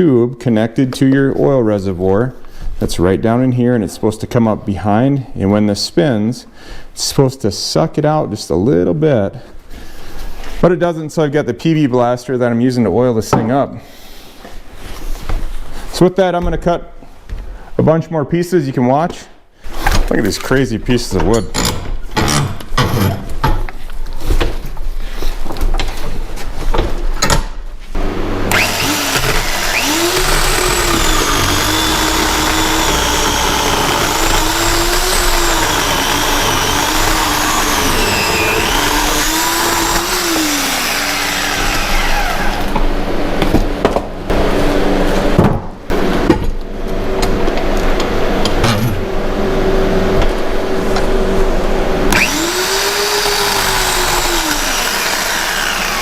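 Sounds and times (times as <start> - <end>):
electric chainsaw cutting wood: 28.0 - 42.8, 52.1 - 56.0.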